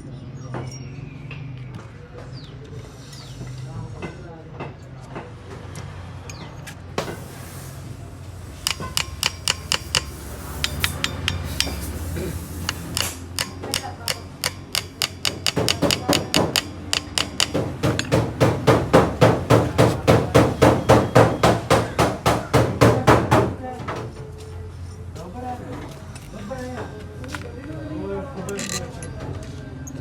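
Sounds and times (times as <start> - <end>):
hammer blows on metal: 7.0 - 23.5.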